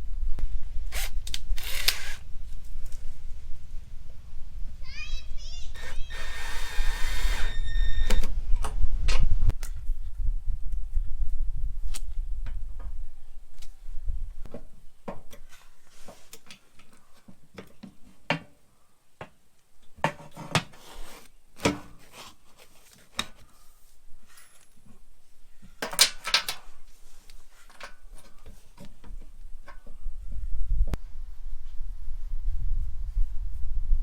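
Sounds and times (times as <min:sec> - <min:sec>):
metal parts rattling: 0:25.8 - 0:26.7
metal parts and tools clinking: 0:25.8 - 0:26.8, 0:27.6 - 0:28.5.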